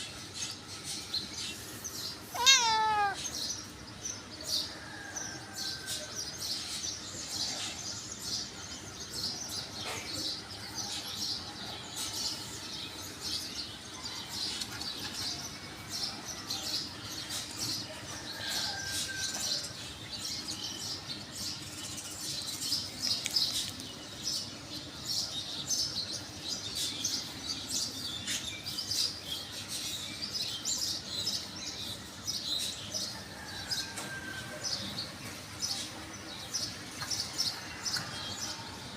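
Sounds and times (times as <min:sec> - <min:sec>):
birds chirping and singing: 0:00.0 - 0:38.9
longer lower bird calls: 0:02.1 - 0:03.5.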